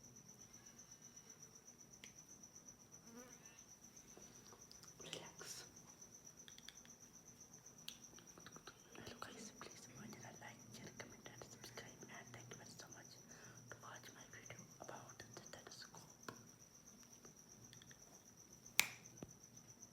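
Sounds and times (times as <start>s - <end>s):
insect trilling: 2.8s - 4.0s.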